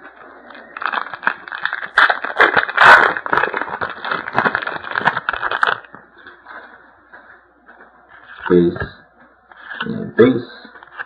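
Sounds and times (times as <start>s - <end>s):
foil wrapper crinkling and tearing: 0.1s - 6.0s.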